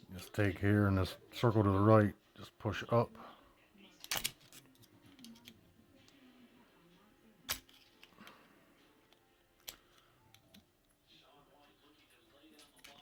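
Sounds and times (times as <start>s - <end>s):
screwdriver clicking on metal parts: 4.0s - 5.6s.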